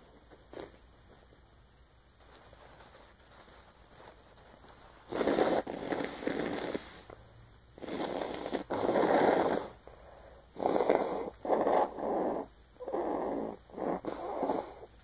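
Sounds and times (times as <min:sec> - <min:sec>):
woman blowing her nose: 0:05.1 - 0:07.1.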